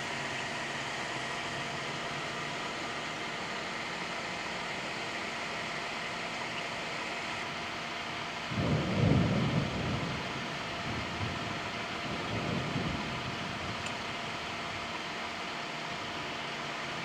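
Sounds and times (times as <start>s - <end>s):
thunder rumbling: 8.4s - 14.9s.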